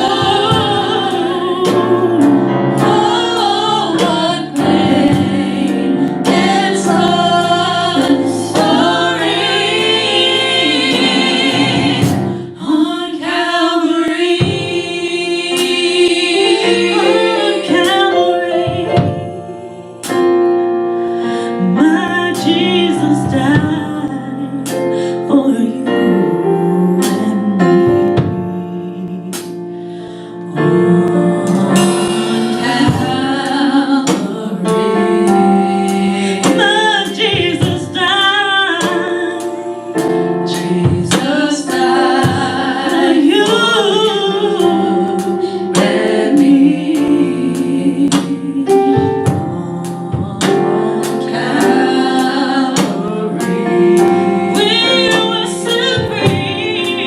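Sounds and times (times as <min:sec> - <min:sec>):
gospel group singing: 0:00.0 - 0:57.0
instrumental accompaniment: 0:00.0 - 0:57.0.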